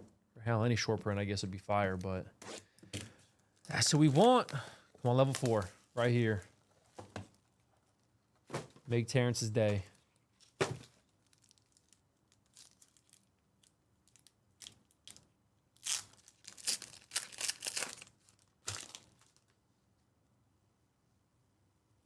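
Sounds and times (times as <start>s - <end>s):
wrapper tearing and crinkling: 3.7s - 6.2s, 10.3s - 15.2s, 15.8s - 19.6s.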